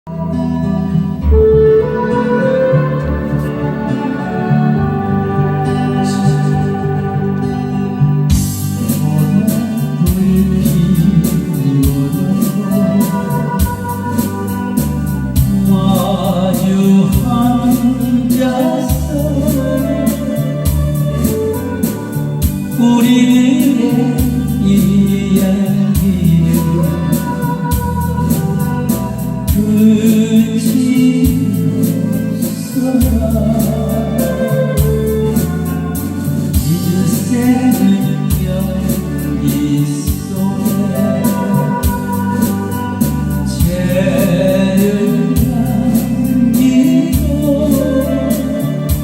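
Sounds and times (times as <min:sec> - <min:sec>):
keyboard backing with beat: 0:00.0 - 0:49.0
pop song with singer: 0:00.1 - 0:49.0.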